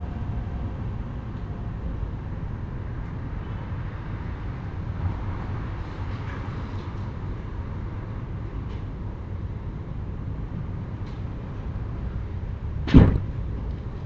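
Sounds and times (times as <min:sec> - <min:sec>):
low background rumble: 0:07.4 - 0:14.0.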